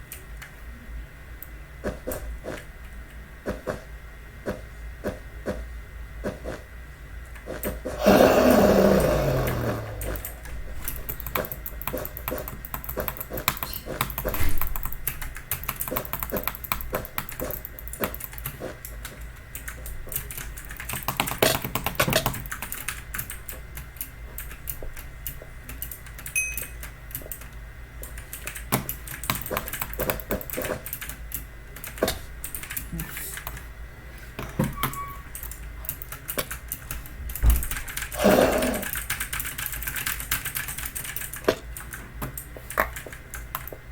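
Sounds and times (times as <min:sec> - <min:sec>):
clicky keyboard typing: 0:09.4 - 0:33.7, 0:34.8 - 0:43.8.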